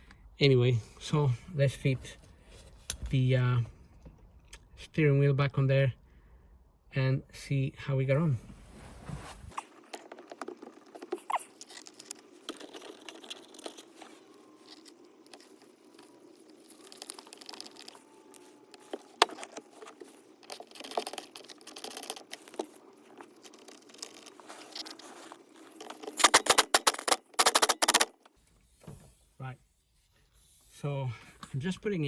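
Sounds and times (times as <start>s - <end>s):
rustling: 8.4s - 28.6s
rapid loud clicks: 25.7s - 28.3s.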